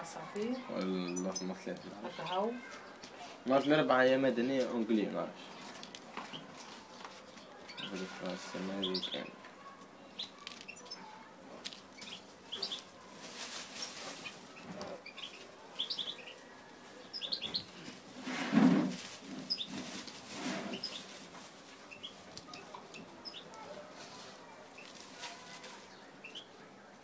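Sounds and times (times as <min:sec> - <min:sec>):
finches chirping: 0:07.6 - 0:09.4, 0:12.0 - 0:12.9, 0:14.2 - 0:16.5, 0:17.1 - 0:17.7
rustling bursts: 0:12.5 - 0:14.8, 0:17.6 - 0:22.4, 0:23.8 - 0:26.0.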